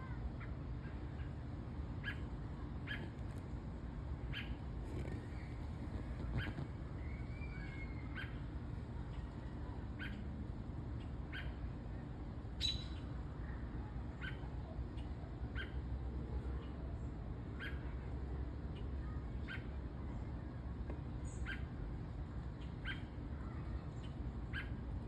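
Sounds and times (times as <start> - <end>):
steady low hum: 0.0 - 25.0
small bird chirping: 4.3 - 8.4, 12.6 - 13.1.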